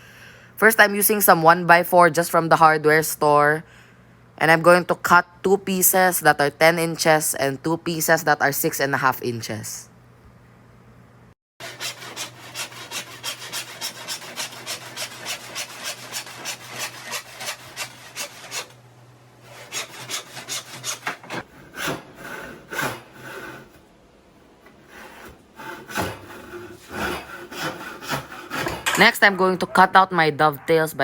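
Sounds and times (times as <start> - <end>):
hand saw cutting wood: 11.6 - 18.8, 19.4 - 23.8, 24.7 - 29.1.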